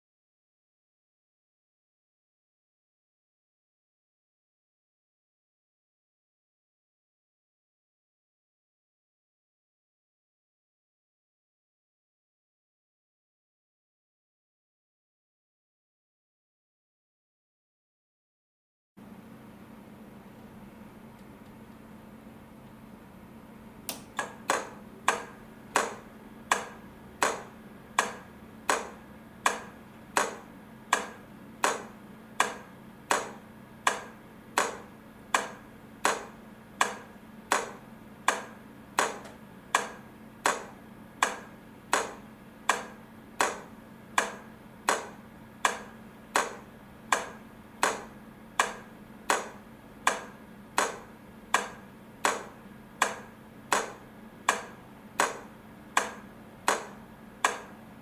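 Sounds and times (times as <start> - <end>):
low steady hum: 19.0 - 58.0.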